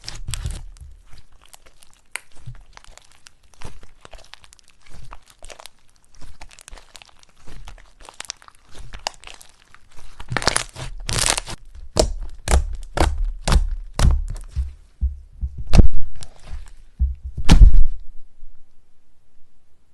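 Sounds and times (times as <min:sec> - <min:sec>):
slime popping and crackling: 0:00.0 - 0:14.8.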